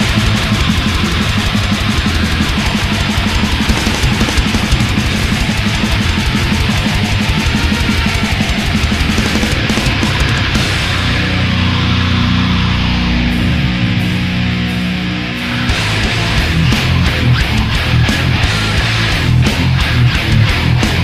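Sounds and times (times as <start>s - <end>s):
fast drumming: 0.0s - 11.2s
distorted metal guitars: 0.0s - 21.0s.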